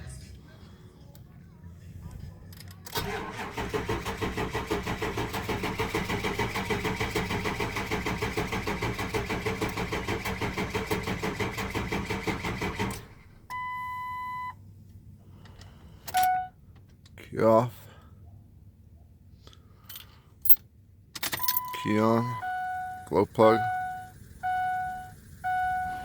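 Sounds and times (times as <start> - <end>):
diesel engine cranking: 2.0 - 13.8, 21.2 - 26.0
electronic beep: 21.4 - 26.0.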